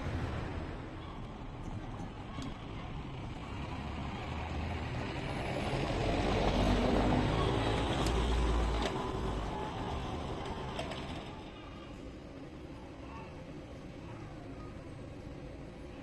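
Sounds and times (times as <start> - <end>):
vehicle passing by: 3.3 - 10.2.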